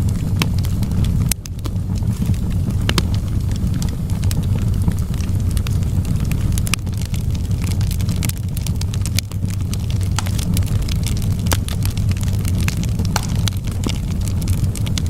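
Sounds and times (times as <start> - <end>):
fire crackling and popping: 0.0 - 15.0
flames rumbling: 0.0 - 15.0.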